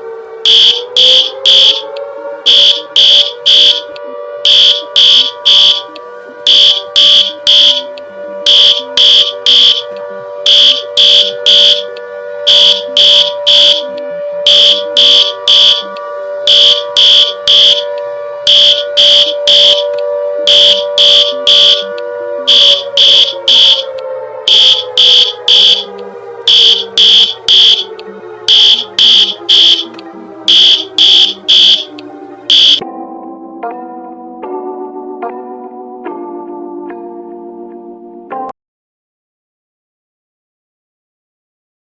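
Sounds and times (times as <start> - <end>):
high-pitched alarm beeps: 0.5 - 11.9, 12.5 - 21.9, 22.5 - 23.9, 24.5 - 32.8.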